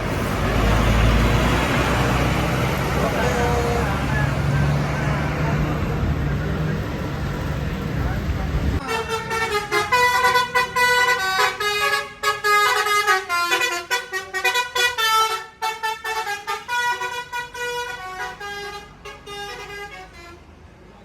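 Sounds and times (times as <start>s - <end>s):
multi-tone bus air horn: 8.8s - 20.6s.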